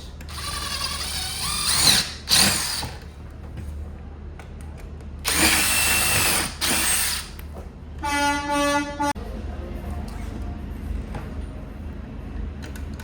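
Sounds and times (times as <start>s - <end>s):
power drill driving screws: 0.3s - 3.0s, 5.3s - 7.4s.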